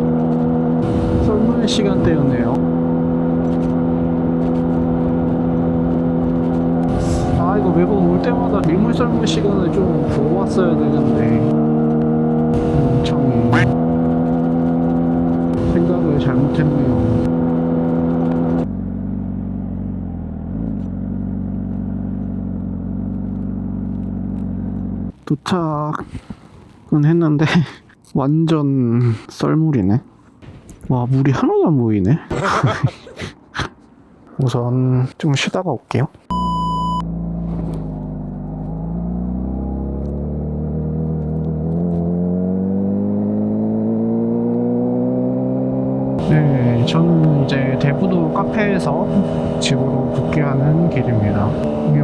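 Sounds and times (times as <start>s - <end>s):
engine revs rising and falling: 0.0s - 25.1s, 36.3s - 52.0s
motorcycle engine running: 0.0s - 25.1s, 36.3s - 52.0s.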